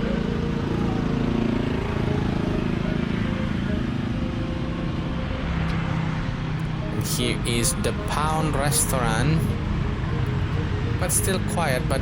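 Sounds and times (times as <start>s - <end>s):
car and motorbike engines: 0.0s - 12.0s.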